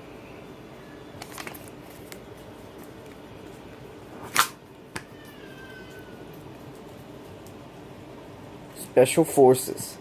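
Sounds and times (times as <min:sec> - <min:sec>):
cat meowing: 0:05.1 - 0:06.2.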